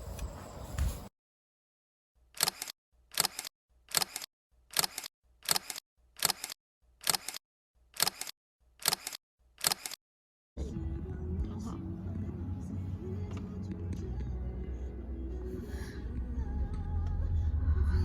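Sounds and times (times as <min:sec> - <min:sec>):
camera shutter double click: 0:08.0 - 0:10.0.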